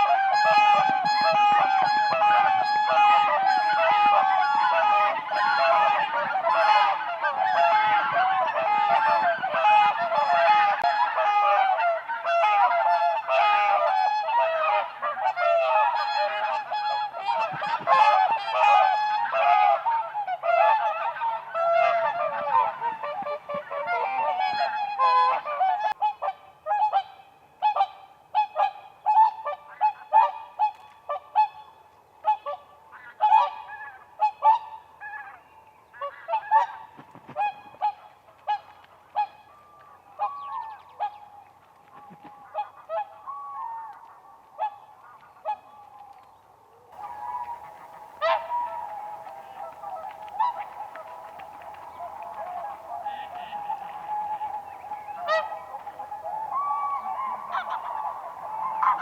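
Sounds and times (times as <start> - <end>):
swans calling: 0.0 - 19.6, 47.0 - 59.0.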